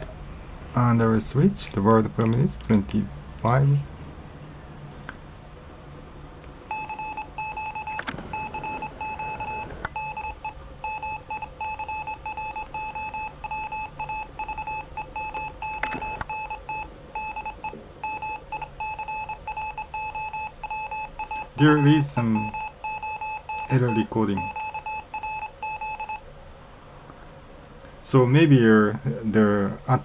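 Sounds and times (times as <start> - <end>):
morse code beeps: 0.0 - 0.2, 6.7 - 26.2.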